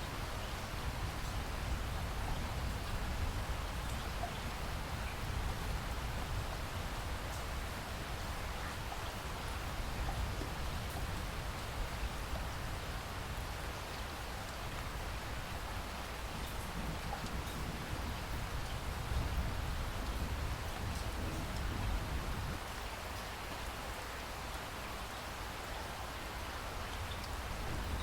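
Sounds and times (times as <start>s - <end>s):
steady rain hiss: 0.0s - 28.0s
raindrop ticks: 16.4s - 17.7s.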